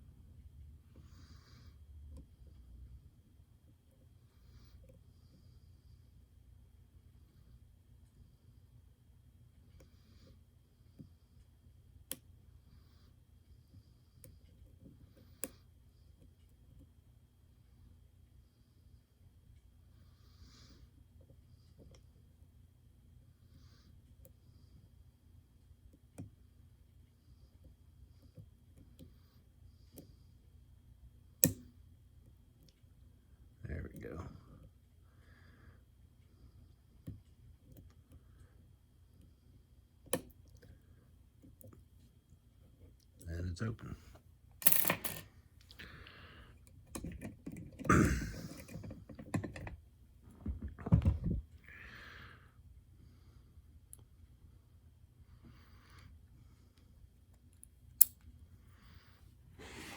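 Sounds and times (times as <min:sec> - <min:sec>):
metallic clicks and knocks: 0:48.5 - 0:49.8.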